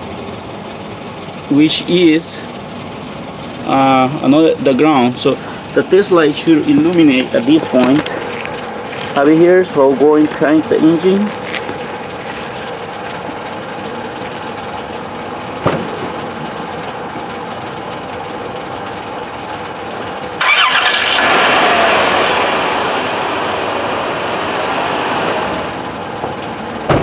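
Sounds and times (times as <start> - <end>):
car engine starting: 1.6 - 15.6, 17.2 - 26.3.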